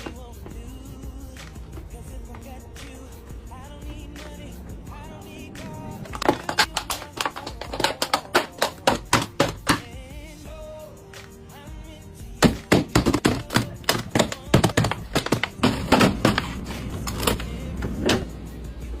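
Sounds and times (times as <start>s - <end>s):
quiet background music: 0.0s - 19.0s
plastic containers clicking and knocking: 6.0s - 9.9s, 12.4s - 17.5s.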